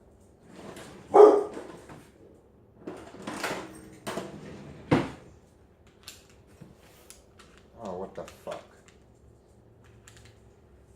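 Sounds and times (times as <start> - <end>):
objects scraping and rattling: 0.2 - 2.2, 2.8 - 5.4.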